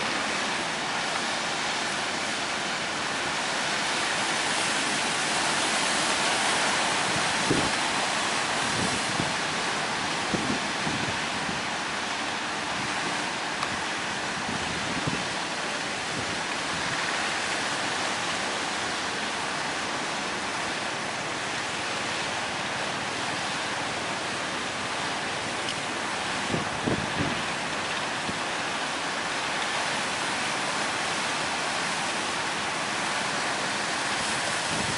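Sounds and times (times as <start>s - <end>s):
wind buffeting microphone: 8.6s - 9.4s, 14.4s - 15.4s, 26.4s - 27.6s, 34.6s - 34.9s.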